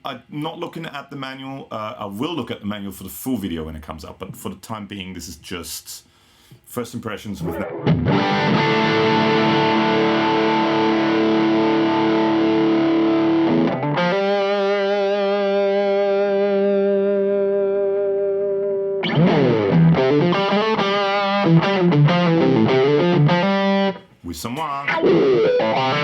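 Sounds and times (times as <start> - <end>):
distorted electric guitar: 7.4 - 24.0, 24.6 - 26.0.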